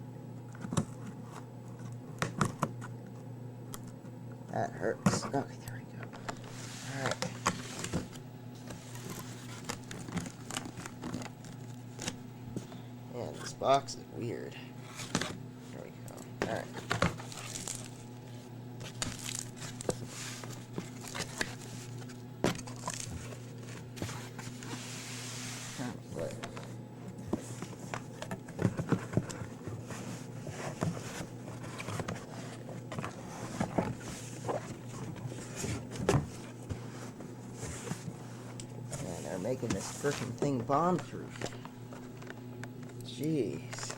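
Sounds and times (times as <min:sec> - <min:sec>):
steady low hum: 0:00.0 - 0:43.9
packing crinkling and tearing: 0:06.2 - 0:12.2, 0:16.5 - 0:18.1, 0:18.8 - 0:24.7.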